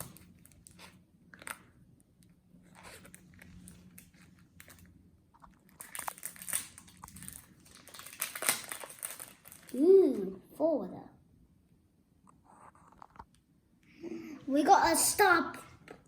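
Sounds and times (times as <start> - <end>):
foil wrapper crinkling and tearing: 2.7 - 9.8.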